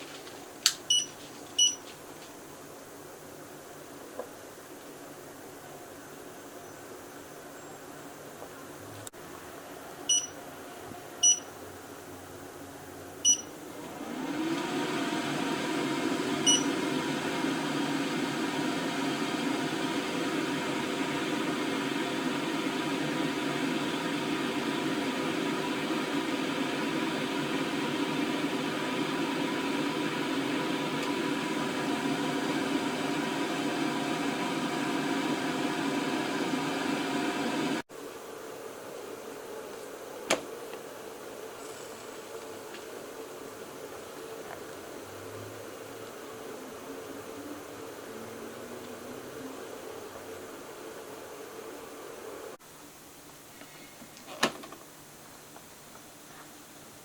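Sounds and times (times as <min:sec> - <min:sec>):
electronic button beeps: 0:00.9 - 0:01.8, 0:10.1 - 0:10.3, 0:11.2 - 0:11.4, 0:13.3 - 0:13.5
air fryer fan whirring: 0:13.2 - 0:37.8.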